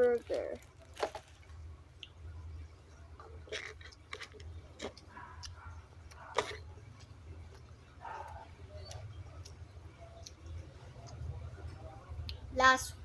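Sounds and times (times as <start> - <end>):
low steady hum: 0.0 - 13.0
person chewing food: 3.1 - 11.3.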